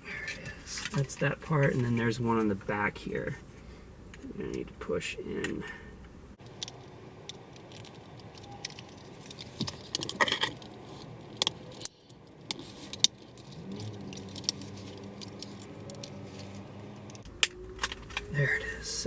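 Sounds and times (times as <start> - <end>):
plastic clips clicking and rattling: 6.4 - 17.2.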